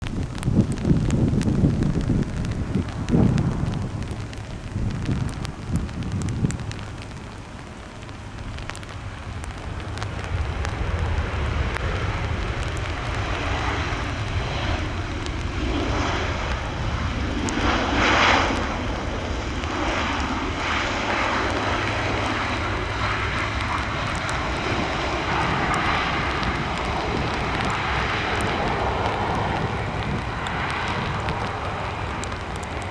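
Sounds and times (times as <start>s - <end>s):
jet engines running: 0.0s - 32.9s
airliner braking on wet runway: 0.1s - 32.9s.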